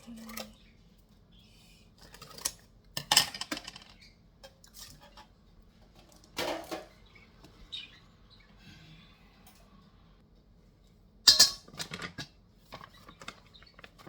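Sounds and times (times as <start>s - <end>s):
dishes and utensils clattering: 2.0s - 5.3s, 11.3s - 14.0s.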